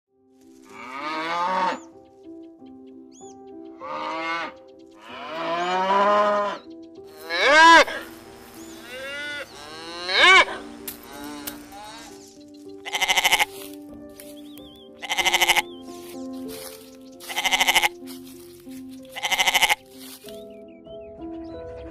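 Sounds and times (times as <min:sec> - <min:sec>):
quiet background music: 0:00.2 - 0:21.9
sheep bleating: 0:03.8 - 0:06.6, 0:07.2 - 0:08.1, 0:08.8 - 0:12.2, 0:12.8 - 0:13.5, 0:15.0 - 0:15.8, 0:17.3 - 0:17.9, 0:19.2 - 0:19.9.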